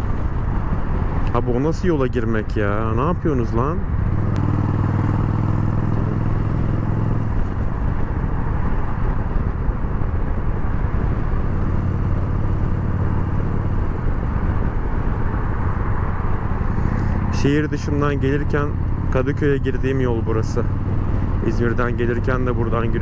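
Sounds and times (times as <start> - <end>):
motorcycle engine running: 0.0 - 1.3, 3.2 - 23.0
rushing noise: 3.8 - 19.1.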